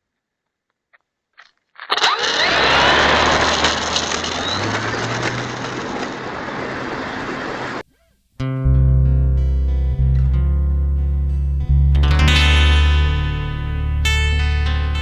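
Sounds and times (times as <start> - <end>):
model plane electric motor: 1.9 - 7.8.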